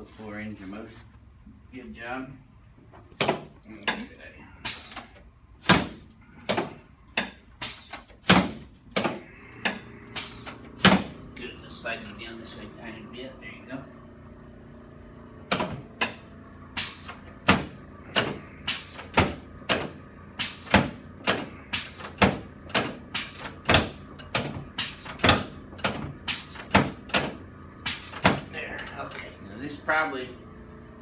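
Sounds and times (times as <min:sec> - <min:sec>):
sharp knocks: 0:05.6 - 0:11.2, 0:15.5 - 0:28.5.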